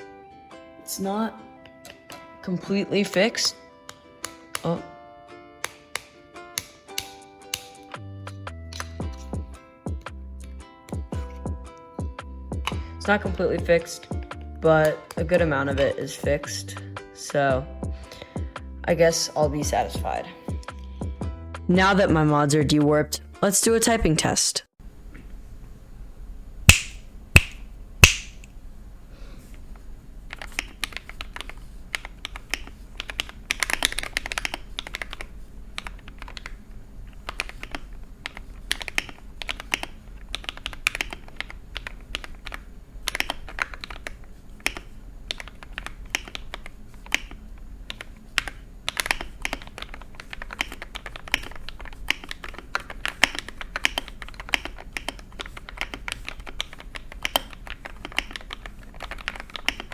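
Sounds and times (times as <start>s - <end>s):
loud sharp keyboard clicks: 26.7s - 28.5s, 30.3s - 59.9s
mechanical keyboard keystrokes clacking: 30.3s - 59.9s.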